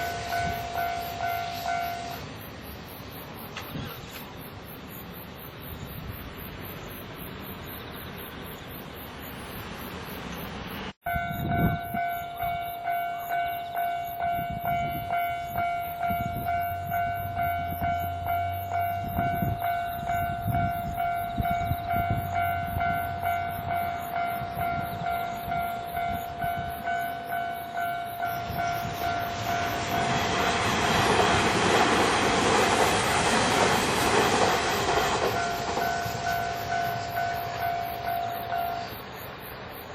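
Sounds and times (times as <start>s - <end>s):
level crossing warning bell: 0.0s - 2.6s, 11.0s - 31.5s, 32.9s - 39.6s
train rumble: 0.0s - 39.9s.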